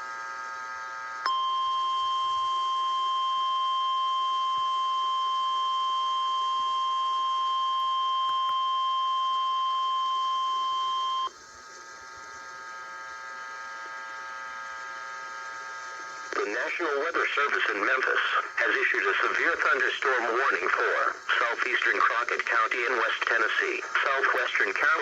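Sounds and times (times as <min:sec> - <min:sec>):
steady high alarm tone: 0:01.3 - 0:11.3
faint steady hiss: 0:15.9 - 0:25.0.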